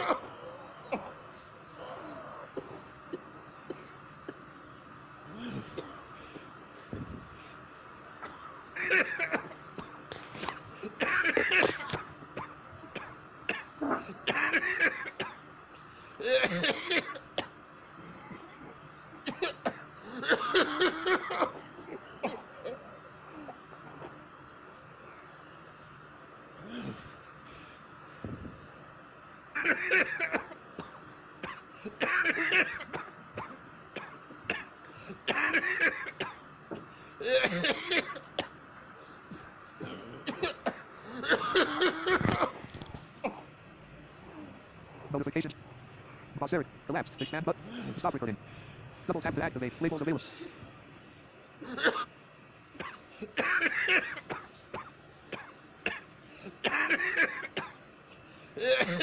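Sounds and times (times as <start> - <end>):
person coughing: 5.3 - 6.1, 16.2 - 17.5, 29.6 - 38.5, 52.8 - 56.0, 58.6 - 59.0
person coughing hard: 5.3 - 6.2, 8.2 - 15.4, 16.2 - 17.6, 19.2 - 22.8, 29.6 - 38.6, 39.3 - 42.6, 51.6 - 52.1, 52.8 - 57.8, 58.6 - 59.0.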